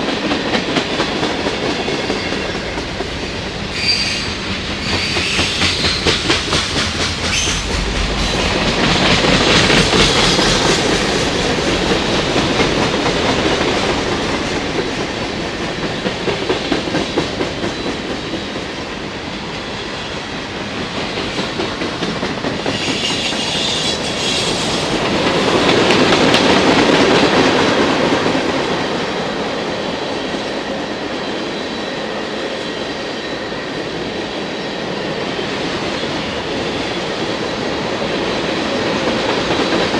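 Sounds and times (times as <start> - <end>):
train wheels clacking over rail joints: 0.0 - 18.7, 20.7 - 28.9
high-pitched wheel squeal: 3.7 - 6.2.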